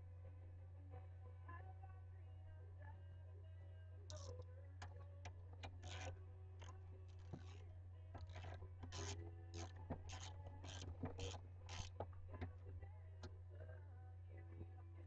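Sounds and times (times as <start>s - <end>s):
steady low hum: 0.0s - 15.0s
ratchet wrench rasping: 5.6s - 7.6s, 8.2s - 12.5s.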